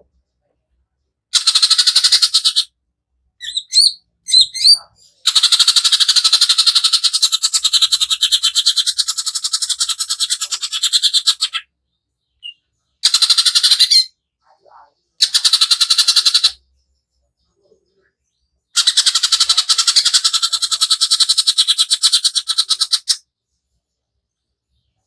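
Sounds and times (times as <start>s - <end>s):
bird singing in rapid rattles: 1.3s - 2.7s, 3.4s - 14.2s, 15.2s - 23.7s
sharp bird chirps: 3.4s - 14.2s.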